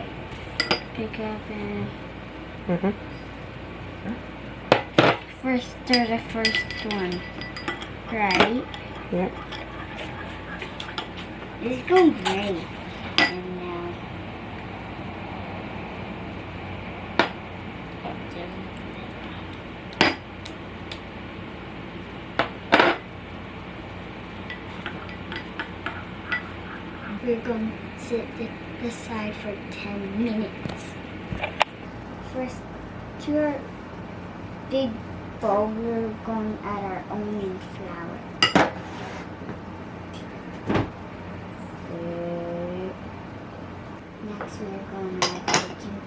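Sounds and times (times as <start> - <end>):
steady humming tone: 0.0 - 46.0
spoon and bowl clinking: 5.9 - 11.3, 24.4 - 27.1.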